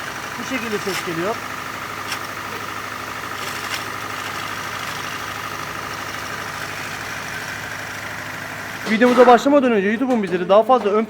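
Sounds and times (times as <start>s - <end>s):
gearbox rattling: 0.0s - 6.8s
car engine idling: 0.0s - 11.0s.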